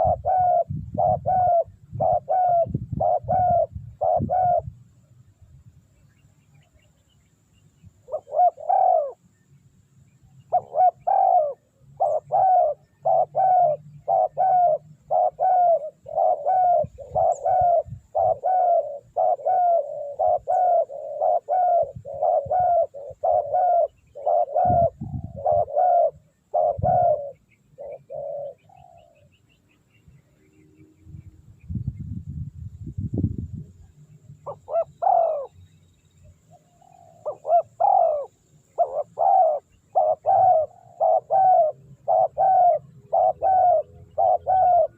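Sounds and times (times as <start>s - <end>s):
dove cooing: 0.0s - 4.8s, 8.0s - 9.3s, 10.5s - 29.4s, 34.4s - 35.6s, 36.5s - 44.9s.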